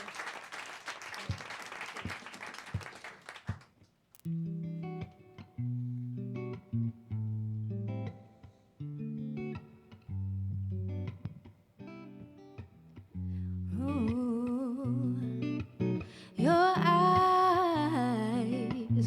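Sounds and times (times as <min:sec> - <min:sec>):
guitar picking chords: 0:04.3 - 0:19.0
wordless singing with vibrato: 0:13.8 - 0:15.6, 0:16.2 - 0:19.0.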